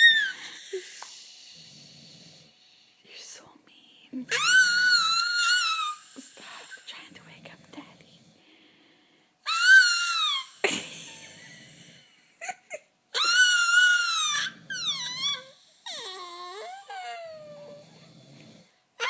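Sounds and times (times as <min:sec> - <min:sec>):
baby squealing: 0:00.0 - 0:00.5, 0:04.3 - 0:06.2, 0:09.4 - 0:10.6, 0:13.1 - 0:17.8
baby yelping: 0:04.3 - 0:06.2, 0:09.4 - 0:10.6, 0:12.4 - 0:17.8.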